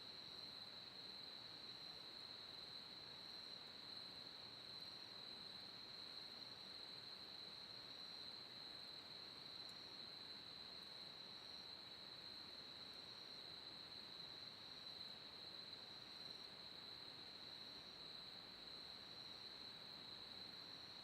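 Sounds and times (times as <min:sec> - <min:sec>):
faint ticks: 0:09.6 - 0:10.0.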